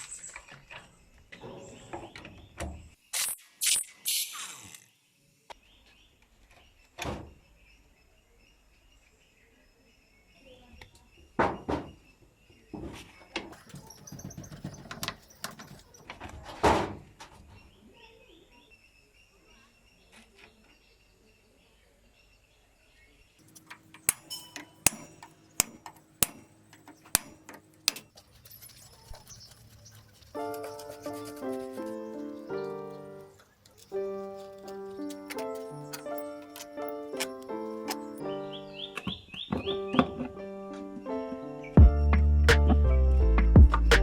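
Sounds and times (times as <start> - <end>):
faint bird chirps: 4.0 - 16.1, 17.5 - 23.4
metal tools knocking on metal: 23.4 - 28.8, 30.4 - 38.2
music: 30.4 - 33.4, 34.0 - 44.0.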